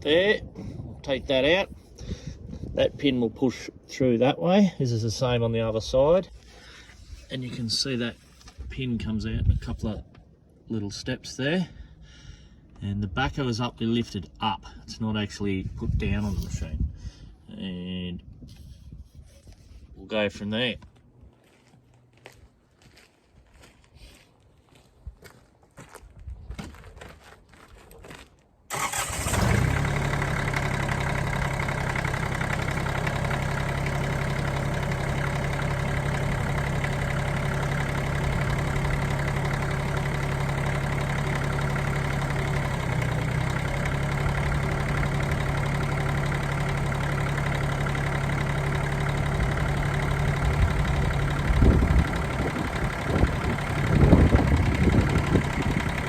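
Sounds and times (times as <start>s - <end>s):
diesel tractor engine idling: 28.7s - 56.0s
loud uneven engine sounds: 29.2s - 56.0s.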